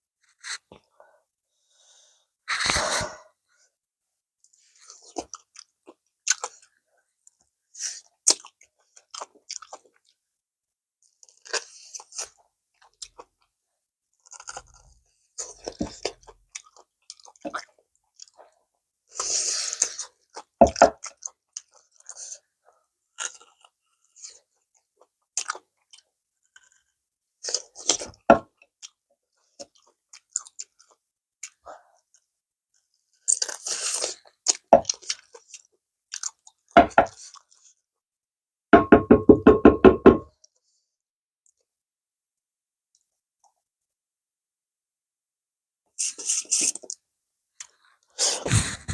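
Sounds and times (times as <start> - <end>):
chewing and crunching food: 4.5 - 10.2, 11.0 - 13.5, 14.2 - 37.8, 46.0 - 47.0, 47.6 - 48.9.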